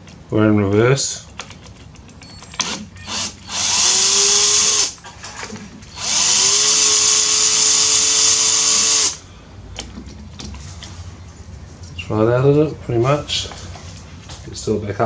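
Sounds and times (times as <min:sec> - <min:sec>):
electric drill running: 0:02.2 - 0:05.2, 0:05.8 - 0:09.2.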